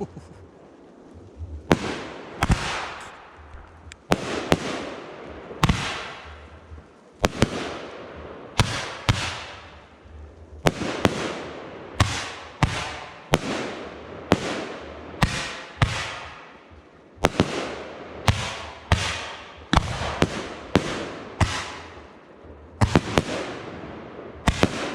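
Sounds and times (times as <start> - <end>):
firework hiss: 0.0 - 16.4
firework bangs: 1.6 - 22.2, 22.8 - 24.9.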